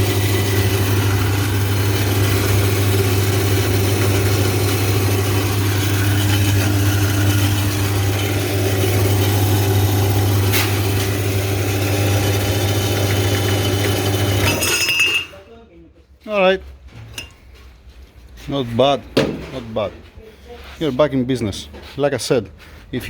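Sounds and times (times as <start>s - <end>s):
electric saw motor humming: 0.0s - 14.6s.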